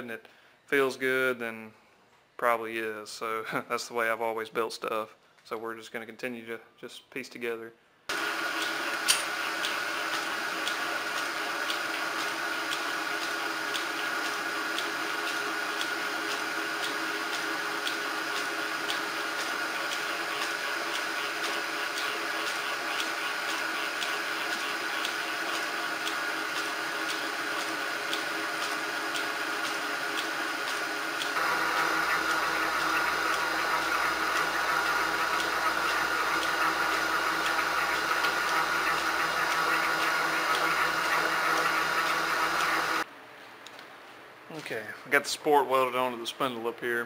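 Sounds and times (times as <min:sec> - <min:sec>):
metalworking machine cutting steel: 0:08.1 - 0:43.0
high whine and fine ticking: 0:10.6 - 0:43.0.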